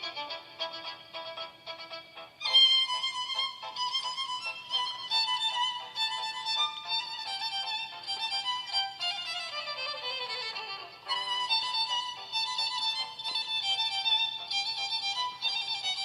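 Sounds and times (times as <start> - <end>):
instrumental ringtone melody: 0.0 - 16.0.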